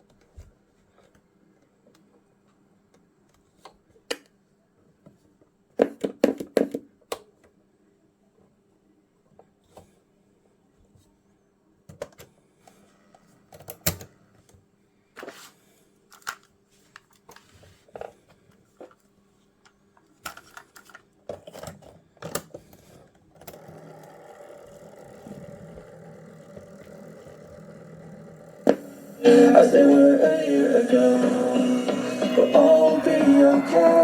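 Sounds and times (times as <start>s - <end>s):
mechanical running with low hum: 23.6s - 29.2s.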